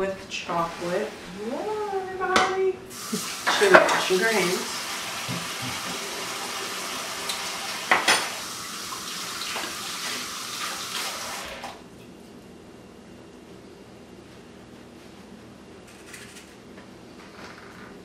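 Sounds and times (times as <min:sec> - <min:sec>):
tap water running: 0:00.5 - 0:11.9.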